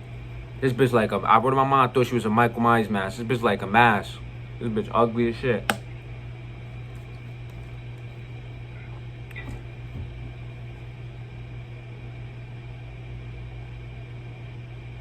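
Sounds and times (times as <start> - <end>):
low electrical hum: 0.0 - 15.0.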